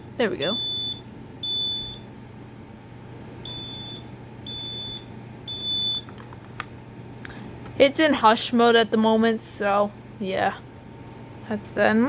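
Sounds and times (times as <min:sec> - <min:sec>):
smoke alarm beeping: 0:00.4 - 0:02.1, 0:03.4 - 0:06.1.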